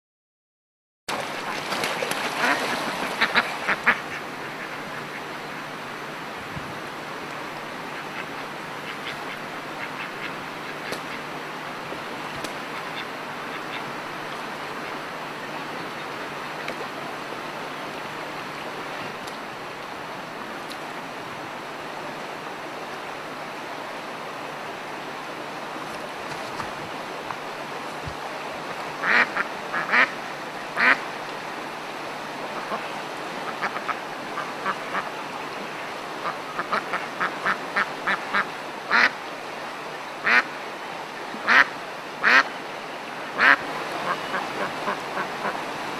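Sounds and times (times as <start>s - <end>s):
ducks quacking: 1.2s - 5.7s, 8.0s - 11.3s, 29.0s - 30.2s, 30.8s - 31.0s, 33.5s - 39.2s, 41.4s - 42.5s, 43.4s - 45.6s.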